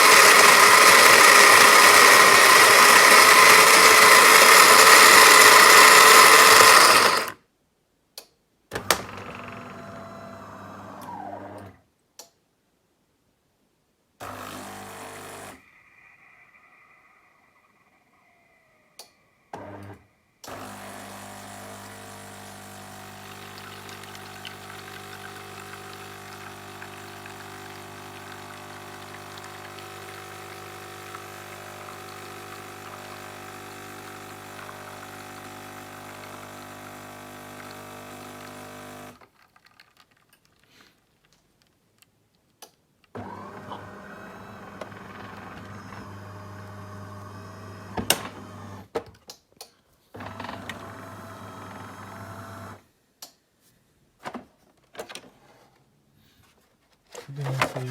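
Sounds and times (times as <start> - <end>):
coffee machine motor hum: 0.0 - 7.4, 9.0 - 11.6, 14.2 - 15.6, 19.6 - 39.2, 43.2 - 48.9, 50.2 - 52.8.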